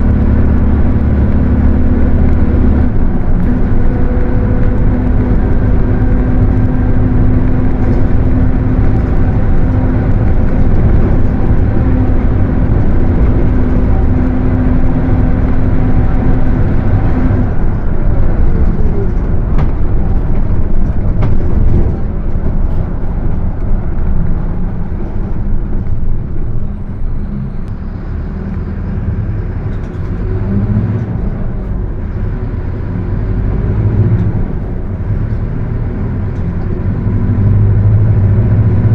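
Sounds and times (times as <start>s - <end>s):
droning driveline whine: 0.0s - 27.8s
diesel bus engine: 0.0s - 38.9s.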